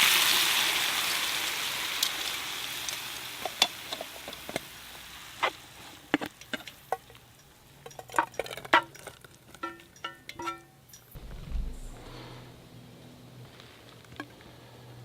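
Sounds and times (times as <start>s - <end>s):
light sizzling hiss: 0.0s - 8.1s, 10.8s - 15.0s
ringing metal taps on pan: 9.6s - 10.8s.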